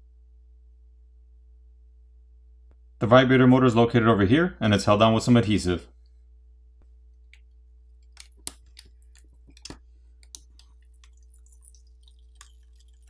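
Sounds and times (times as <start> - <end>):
small tool clicks and taps: 8.0 - 11.3.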